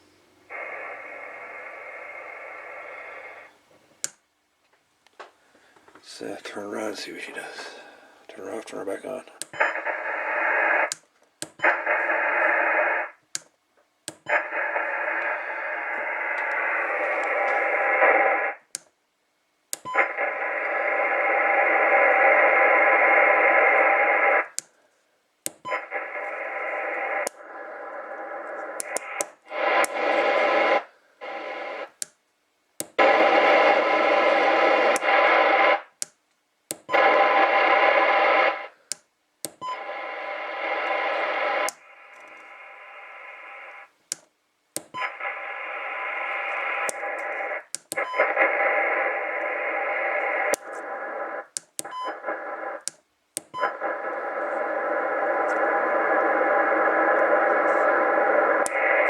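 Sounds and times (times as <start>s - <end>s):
radio static: 0.5s - 3.6s, 6.0s - 11.0s, 11.6s - 13.2s, 14.3s - 18.7s, 20.0s - 24.6s, 25.6s - 32.0s, 32.9s - 36.0s, 36.9s - 38.8s, 39.7s - 43.9s, 44.9s - 59.0s
sharp clicks: 28.8s - 30.0s, 44.1s - 45.3s, 46.8s - 48.5s, 51.5s - 52.2s.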